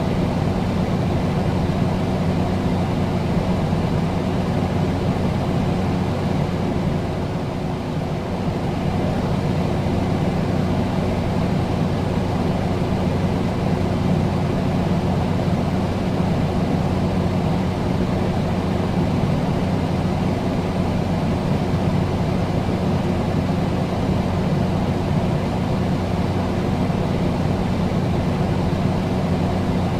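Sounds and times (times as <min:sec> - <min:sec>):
steady low hum: 0:00.0 - 0:29.9.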